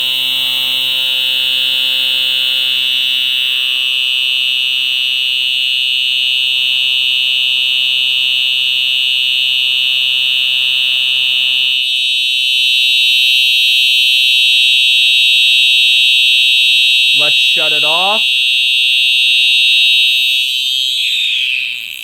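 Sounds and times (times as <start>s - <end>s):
high-pitched alarm horn tone: 9.5s - 21.5s.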